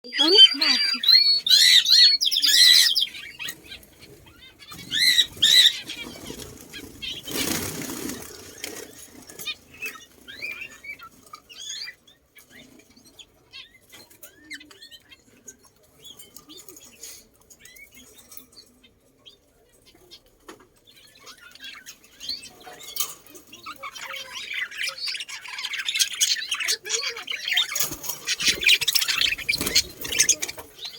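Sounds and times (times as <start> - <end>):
small birds chirping: 0.0 - 30.9
loud arched bird calls: 0.1 - 8.8, 24.0 - 30.9
wing flapping: 4.9 - 9.4, 27.6 - 30.8.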